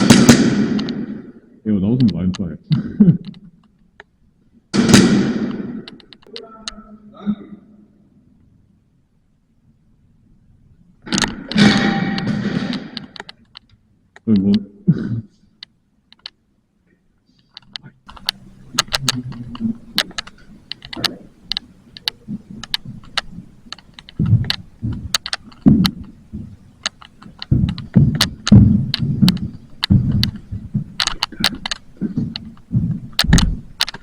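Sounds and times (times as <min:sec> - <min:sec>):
airsoft gun shots cracking: 0:00.0 - 0:01.3, 0:04.7 - 0:06.0
heavy thuds: 0:22.2 - 0:33.8.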